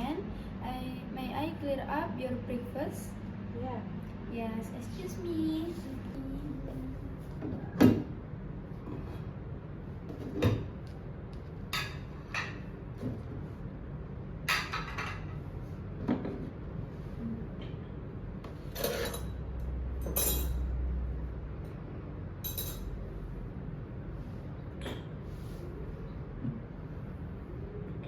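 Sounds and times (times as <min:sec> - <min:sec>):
dishes clinking and clattering: 0:11.7 - 0:12.7, 0:14.4 - 0:15.4, 0:18.7 - 0:20.7, 0:22.4 - 0:23.0.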